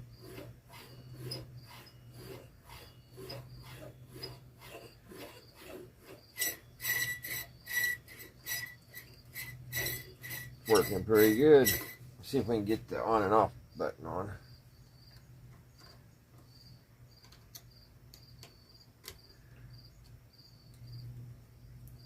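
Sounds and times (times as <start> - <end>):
steady low hum: 0.0 - 22.0
radio tuning knob rasping: 0.2 - 12.0.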